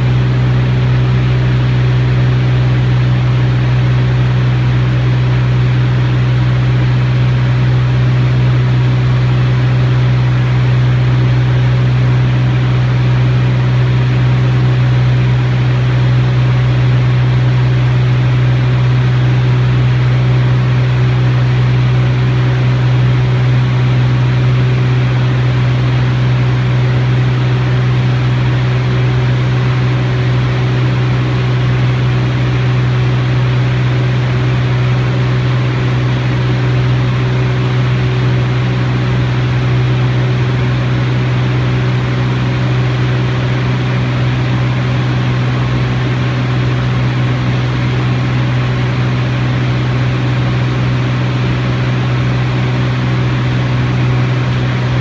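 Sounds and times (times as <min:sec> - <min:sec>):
propeller plane engine droning: 0:00.0 - 0:55.0.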